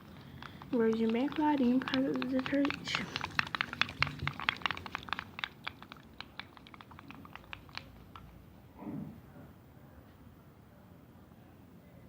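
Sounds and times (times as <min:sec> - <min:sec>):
utensil clicking against bowl: 0:00.0 - 0:08.4.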